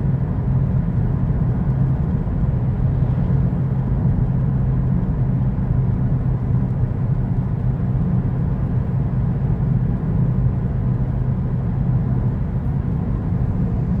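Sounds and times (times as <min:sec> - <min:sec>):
constant low hum: 0:00.0 - 0:14.0
steady low rumble: 0:11.0 - 0:14.0.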